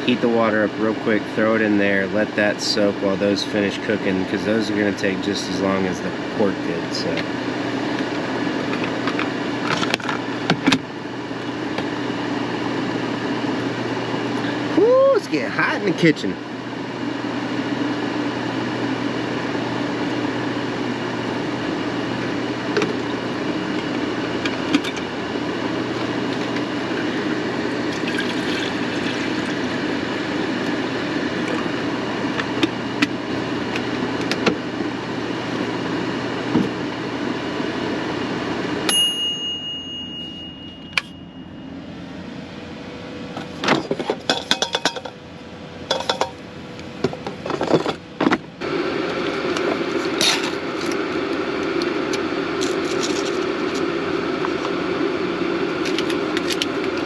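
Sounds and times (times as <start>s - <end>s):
electric kettle heating water: 16.0s - 41.1s, 48.6s - 57.0s
kettle switching off ring: 38.9s - 41.3s.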